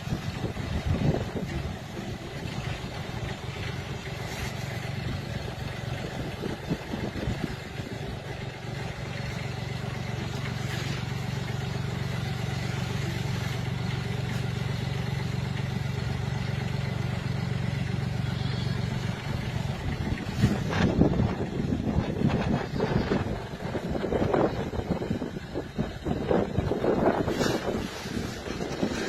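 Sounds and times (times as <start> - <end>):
engine running with low hum: 0.0 - 29.0.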